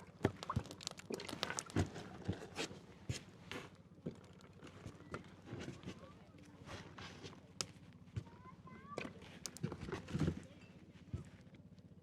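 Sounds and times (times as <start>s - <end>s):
small knocks clicks and crunches: 9.0s - 10.4s.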